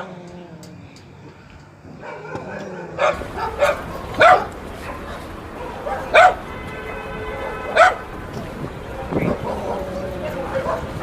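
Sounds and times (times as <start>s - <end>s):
dog barking: 2.0s - 8.2s, 9.3s - 11.0s.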